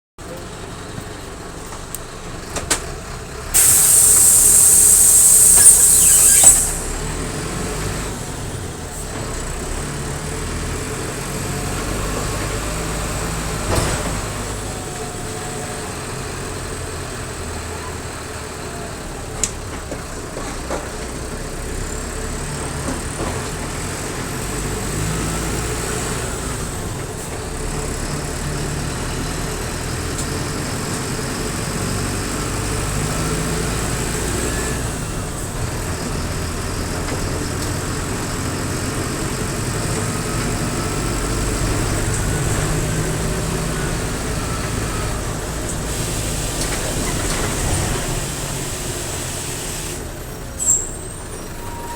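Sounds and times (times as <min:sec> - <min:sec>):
bus diesel engine running: 0:00.2 - 0:51.9
steady high whistle: 0:03.6 - 0:07.2.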